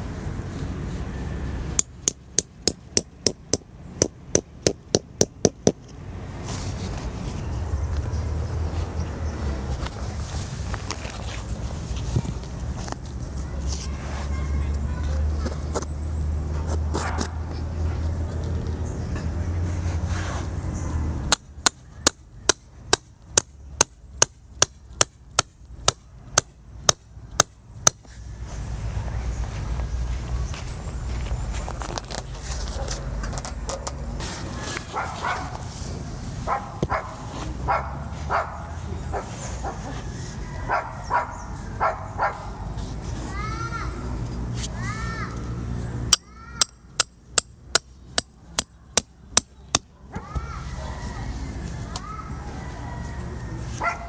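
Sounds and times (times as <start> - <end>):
hammering tent stakes: 1.8 - 5.8, 21.3 - 28.2, 46.1 - 50.4.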